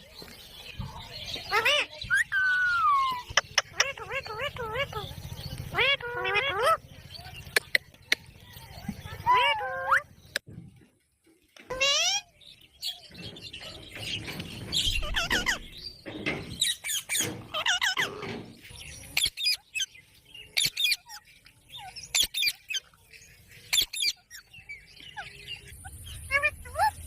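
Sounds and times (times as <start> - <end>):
parakeet chirping and squawking: 1.5 - 5.1, 5.7 - 6.9, 9.2 - 10.2, 11.7 - 19.9, 20.6 - 22.9, 23.6 - 24.5, 25.1 - 27.0.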